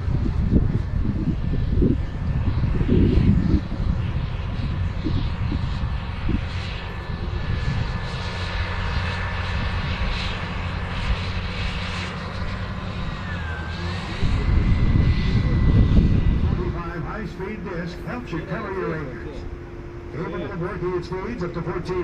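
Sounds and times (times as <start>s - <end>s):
tractor diesel engine droning: 10.4s - 15.6s.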